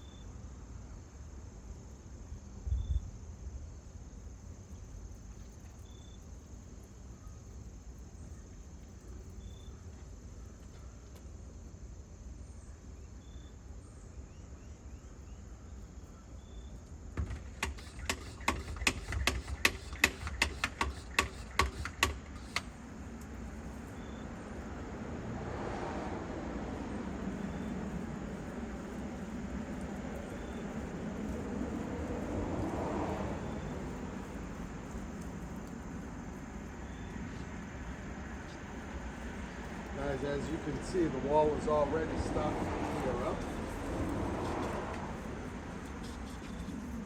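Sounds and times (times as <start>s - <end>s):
insects chirping faintly: 0.0s - 47.0s
sharp clicks: 17.2s - 23.3s
broad rushing noise: 17.6s - 47.0s.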